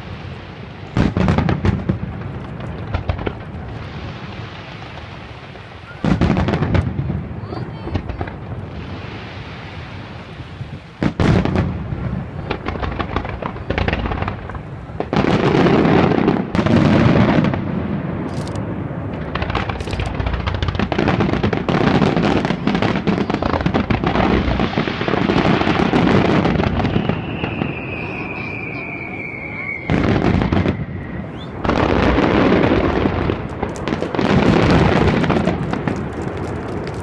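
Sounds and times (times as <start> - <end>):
firework crackling: 0.0 - 37.0
firework shells bursting: 18.2 - 28.7, 29.3 - 37.0.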